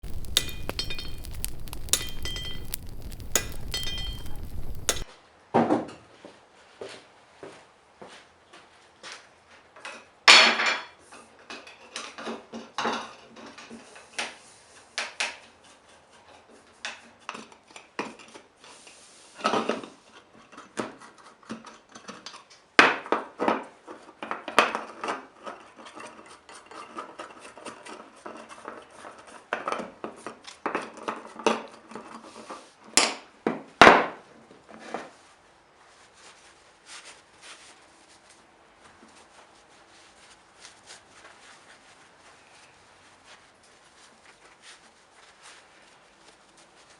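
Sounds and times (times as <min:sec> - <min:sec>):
metal tools clinking: 0:00.0 - 0:05.1
sharp metal strikes: 0:00.0 - 0:05.1.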